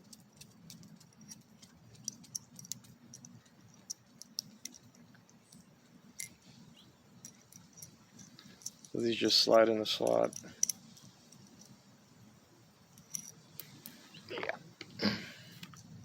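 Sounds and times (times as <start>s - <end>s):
metal tool clicks and taps: 0.0s - 5.6s
low steady hum: 0.0s - 16.0s.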